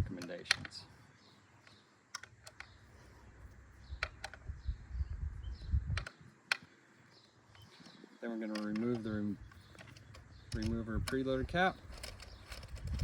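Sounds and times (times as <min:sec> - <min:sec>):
metal tool clicks: 0:07.5 - 0:13.0.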